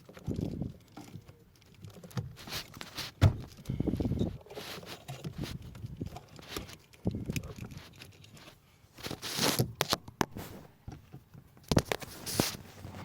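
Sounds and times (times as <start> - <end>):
wiring loom rustling and scraping: 0.0 - 13.0.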